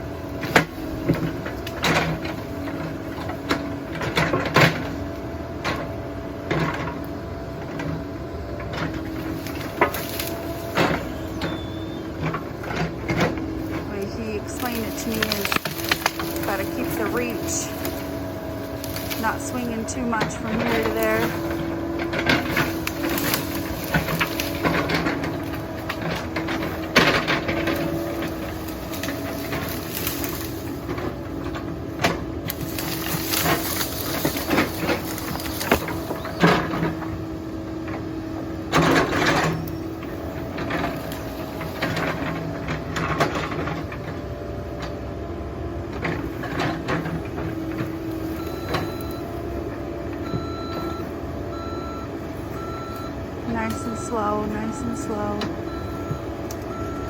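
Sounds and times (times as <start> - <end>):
excavator diesel engine droning: 0.0 - 57.0
reversing alarm beeping: 10.8 - 12.2, 48.2 - 57.0.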